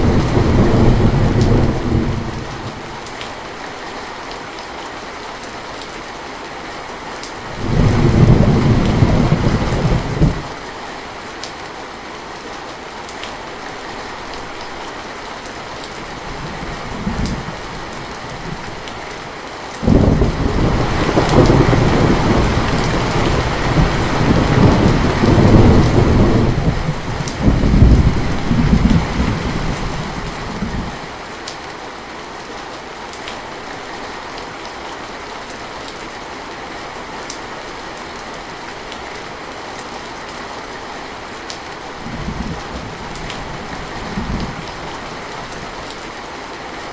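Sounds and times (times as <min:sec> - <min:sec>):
thunder rolling: 0:00.0 - 0:02.8, 0:07.5 - 0:10.5, 0:19.8 - 0:31.0
rain hissing: 0:00.0 - 0:04.1, 0:07.4 - 0:11.2, 0:13.4 - 0:31.4.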